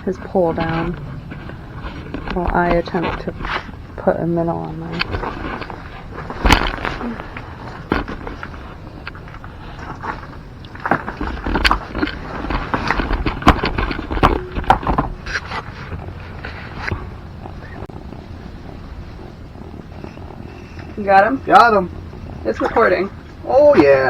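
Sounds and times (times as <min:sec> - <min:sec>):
handling knocks and rustling: 0:00.0 - 0:18.3
steady low rumble: 0:00.0 - 0:24.0.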